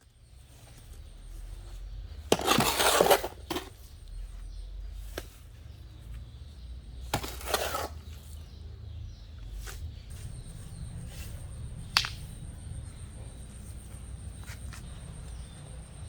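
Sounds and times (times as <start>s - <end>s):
hard objects clattering and scraping: 1.6s - 4.1s, 7.0s - 8.4s
steady low hum: 9.4s - 16.0s.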